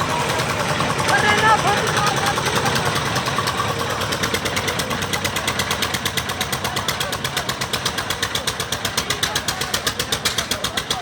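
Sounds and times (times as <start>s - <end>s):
concrete mixer engine clattering: 0.0s - 11.0s.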